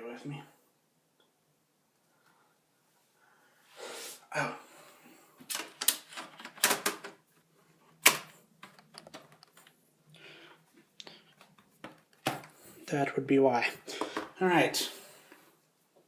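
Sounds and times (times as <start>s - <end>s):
plastic laptop parts clicking: 8.0s - 9.7s.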